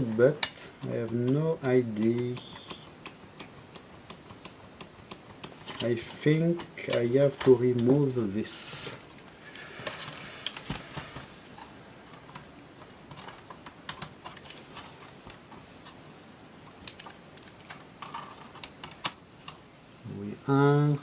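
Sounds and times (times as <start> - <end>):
laptop parts clicking and tapping: 2.0 - 8.0, 10.5 - 16.0, 16.7 - 19.6.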